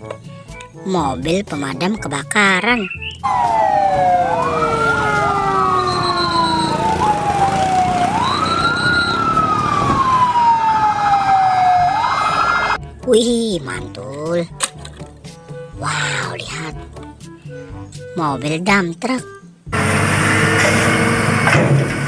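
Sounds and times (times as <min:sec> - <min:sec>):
fire engine siren wailing: 0:02.9 - 0:12.8, 0:19.8 - 0:22.0
second siren tone: 0:03.0 - 0:12.8.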